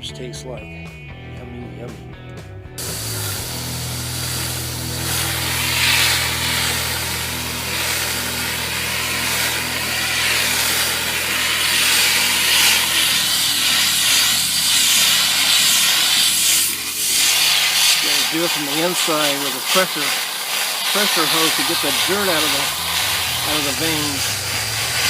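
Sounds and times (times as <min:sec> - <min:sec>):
low machine hum: 0:02.8 - 0:17.1
pressure hose water spraying: 0:02.8 - 0:25.0.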